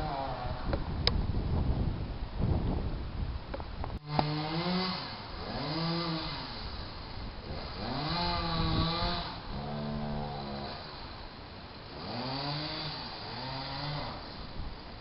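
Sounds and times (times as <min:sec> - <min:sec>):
chainsaw revving: 0:00.0 - 0:00.7, 0:04.0 - 0:14.8
low rumbling noise: 0:00.0 - 0:15.0.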